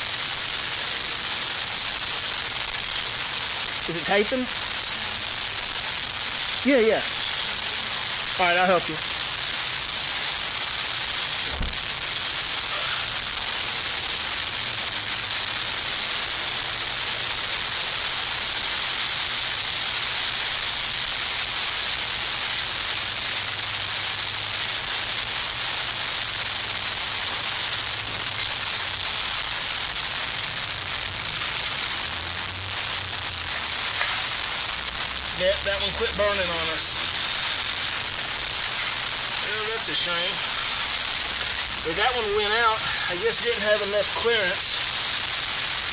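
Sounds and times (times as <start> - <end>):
camp stove fire hissing: 0.0 - 45.9.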